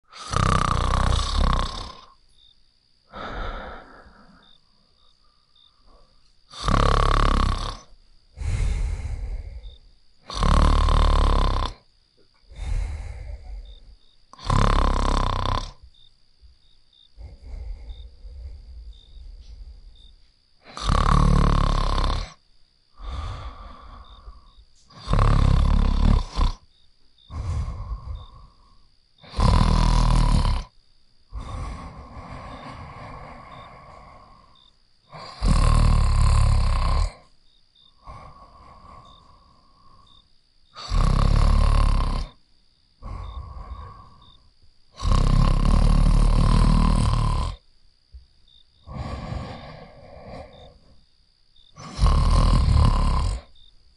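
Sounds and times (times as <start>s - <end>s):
loud snoring: 0.0s - 2.2s, 5.9s - 11.8s, 12.5s - 15.8s, 20.6s - 22.4s, 23.0s - 26.7s, 27.3s - 42.4s, 43.0s - 47.6s, 48.8s - 51.0s, 51.7s - 53.6s
faint high whine: 0.1s - 53.9s.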